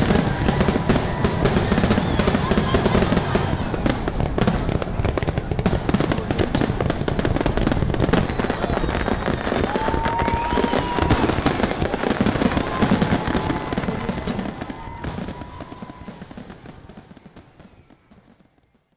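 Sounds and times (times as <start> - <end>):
fireworks bangs and crackles: 0.0 - 18.9.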